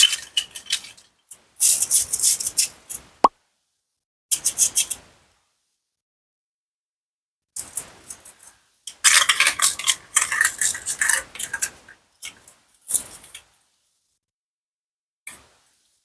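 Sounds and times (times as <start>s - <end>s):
toy food clattering on cutting board: 9.0s - 12.4s.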